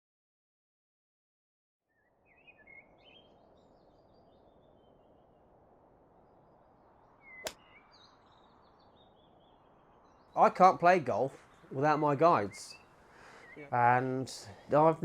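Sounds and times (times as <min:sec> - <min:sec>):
birds chirping: 0:01.9 - 0:05.6, 0:07.1 - 0:15.0.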